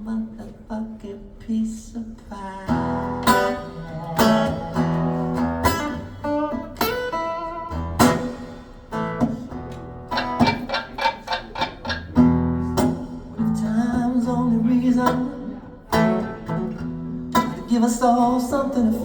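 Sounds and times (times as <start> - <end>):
person singing: 2.3 - 5.8, 13.4 - 16.1
guitar plucked and strummed: 2.6 - 19.0.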